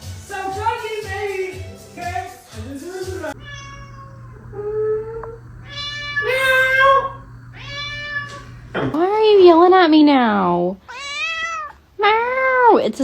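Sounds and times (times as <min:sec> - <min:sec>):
cat meowing: 0:03.4 - 0:08.9
steady low hum: 0:03.4 - 0:09.0.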